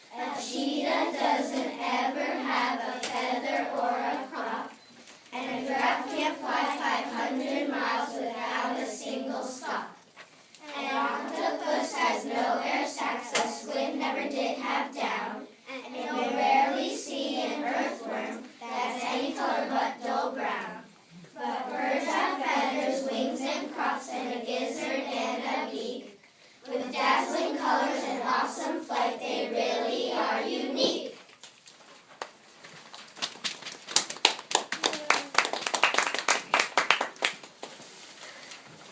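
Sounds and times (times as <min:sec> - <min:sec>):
children singing in unison: 0:00.1 - 0:04.8, 0:05.4 - 0:10.0, 0:10.6 - 0:26.1, 0:26.7 - 0:31.2
group clapping: 0:31.4 - 0:38.0.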